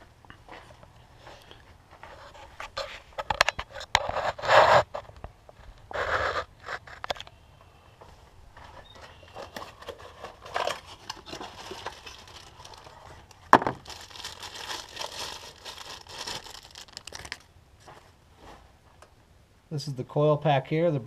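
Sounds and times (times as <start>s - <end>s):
packaging rustling and crinkling: 8.6s - 17.5s.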